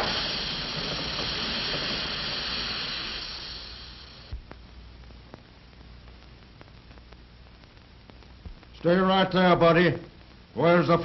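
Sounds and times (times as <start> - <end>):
loud even hiss: 0.0 - 4.4.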